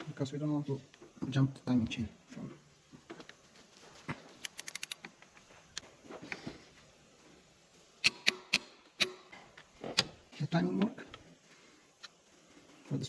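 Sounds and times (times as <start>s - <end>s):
metallic clicks of hand tools: 4.4s - 5.1s, 8.0s - 9.4s.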